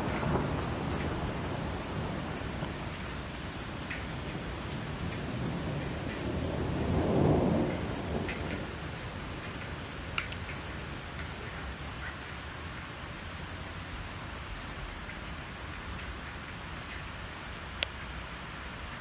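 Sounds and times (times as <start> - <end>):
thunder rumbling: 0.0 - 15.0
hail and rain falling: 0.0 - 19.0
hailstones ticking: 0.0 - 19.0.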